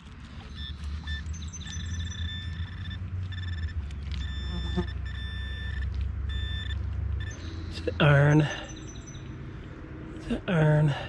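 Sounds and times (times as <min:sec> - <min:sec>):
low steady rumble: 0:00.0 - 0:11.0
metal detector high-pitched tone: 0:00.5 - 0:07.6.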